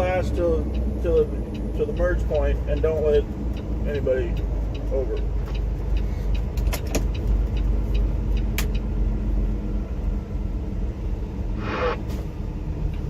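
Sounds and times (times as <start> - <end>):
truck diesel engine rumble: 0.0 - 13.0
sharp clicks: 1.5 - 8.9.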